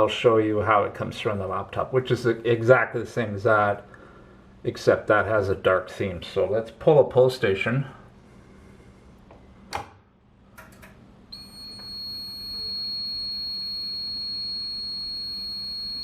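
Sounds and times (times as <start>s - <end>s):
high-pitched fire alarm tone: 11.3s - 16.0s.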